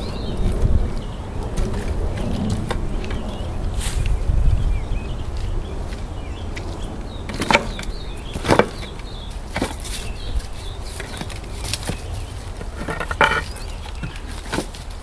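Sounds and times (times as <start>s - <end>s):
branches rustling: 0.0s - 15.0s
twigs cracking: 5.3s - 15.0s.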